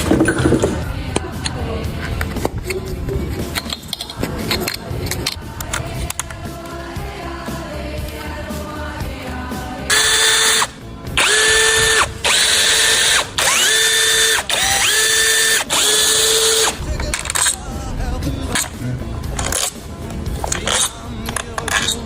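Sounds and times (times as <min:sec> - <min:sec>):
power tool whining in bursts: 0:09.9 - 0:16.8.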